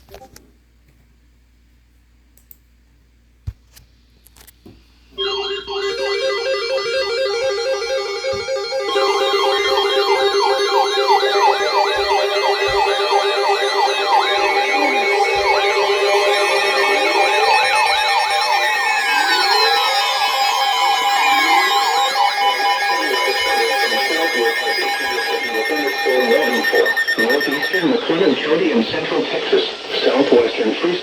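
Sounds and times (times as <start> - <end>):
electronic alert alarm warbling: 5.2 - 28.9.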